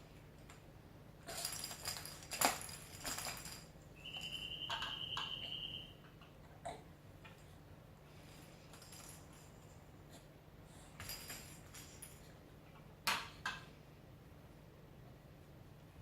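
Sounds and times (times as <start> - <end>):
baby toys jingling: 1.3 - 4.8.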